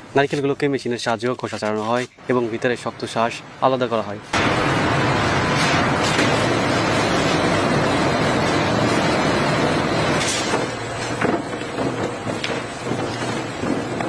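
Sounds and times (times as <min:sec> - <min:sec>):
machinery clattering: 0:04.4 - 0:14.0
sharp knocks: 0:10.2 - 0:14.0.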